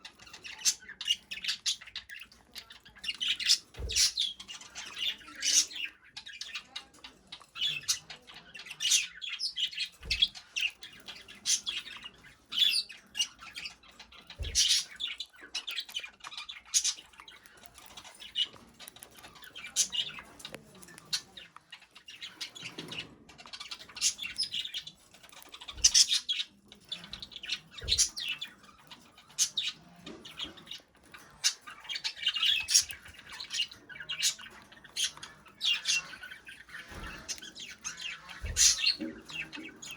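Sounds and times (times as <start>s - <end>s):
budgerigar chirping and squawking: 0.0s - 39.9s.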